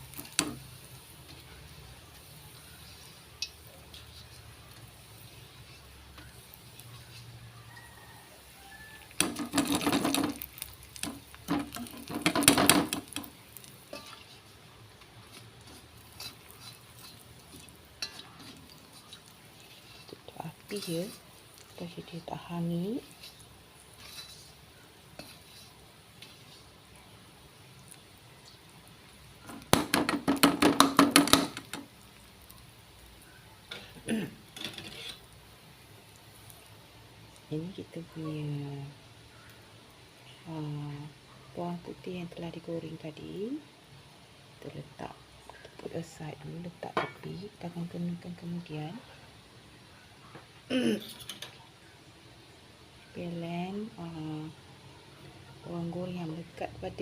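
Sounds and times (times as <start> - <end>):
metal utensil scraping a wok: 0.0 - 26.9, 33.7 - 35.4.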